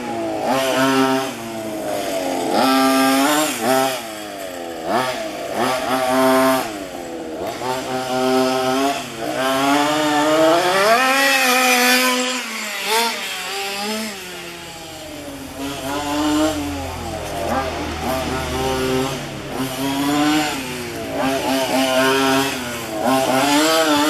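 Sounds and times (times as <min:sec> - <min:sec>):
small two-stroke engine revving: 0:00.0 - 0:24.0.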